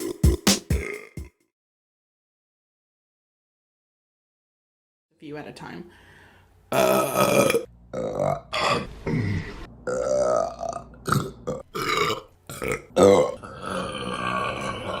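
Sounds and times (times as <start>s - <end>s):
woman burping: 6.7s - 8.4s, 9.8s - 15.0s.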